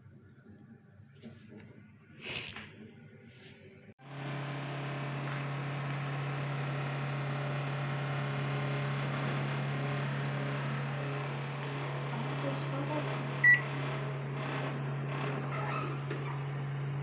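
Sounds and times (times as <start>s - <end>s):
microwave oven humming: 4.0s - 17.0s.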